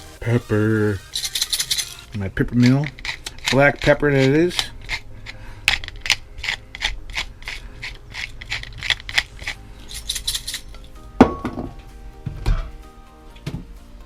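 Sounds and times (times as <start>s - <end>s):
pepper mill grinding: 0.4s - 11.0s.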